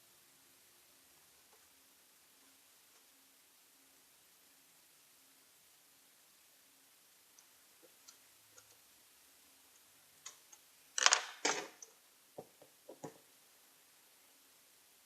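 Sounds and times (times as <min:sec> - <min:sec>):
faint clicks: 0:07.3 - 0:08.9.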